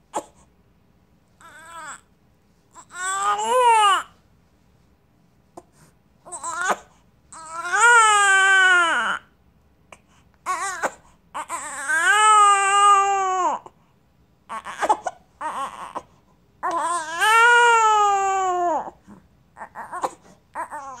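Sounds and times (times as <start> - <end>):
baby crying: 1.4 - 2.1, 2.8 - 4.1, 6.3 - 9.3, 10.4 - 13.8, 14.5 - 21.0.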